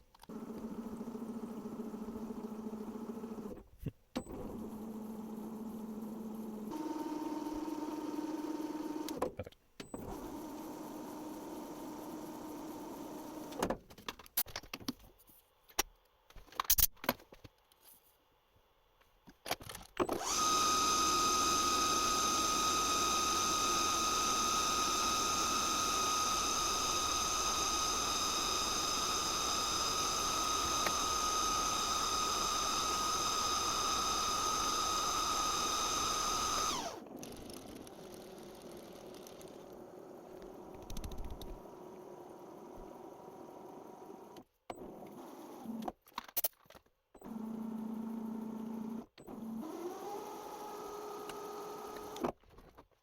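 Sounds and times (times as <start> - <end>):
metal lathe motor hum: 20.2 - 38.0
lathe high whine: 20.2 - 38.2.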